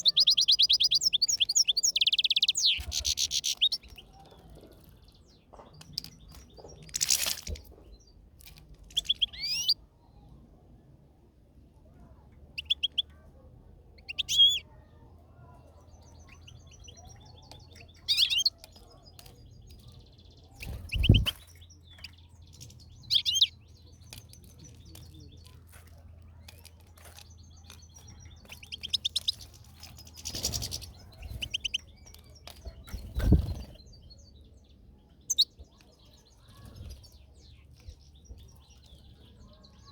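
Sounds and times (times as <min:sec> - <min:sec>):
goldfinch twittering: 0:00.0 - 0:04.0, 0:08.9 - 0:09.8, 0:12.6 - 0:13.0, 0:14.0 - 0:14.6, 0:23.1 - 0:23.6, 0:27.6 - 0:33.8, 0:35.3 - 0:35.6.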